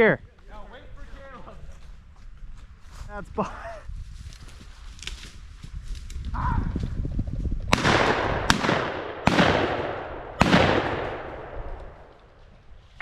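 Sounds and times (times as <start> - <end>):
shotgun shots with echo: 7.7 - 12.0.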